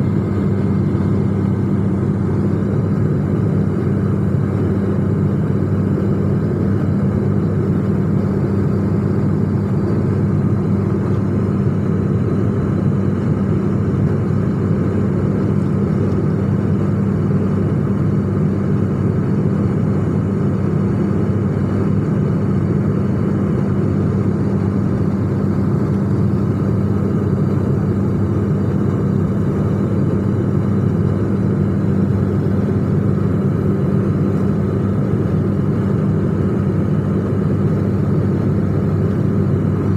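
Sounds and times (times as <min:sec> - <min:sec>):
airliner engine drone: 0:00.0 - 0:39.9
low hum: 0:00.0 - 0:39.9.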